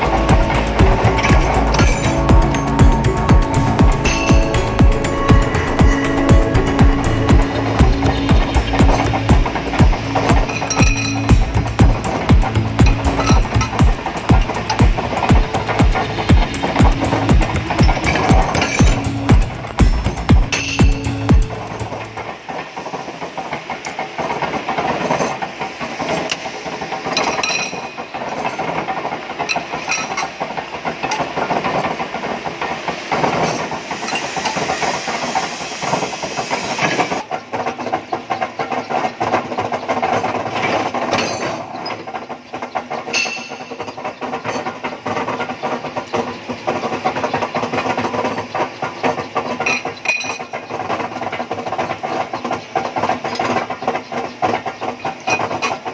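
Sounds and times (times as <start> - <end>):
metal shop machinery hissing: 32.5 - 37.2.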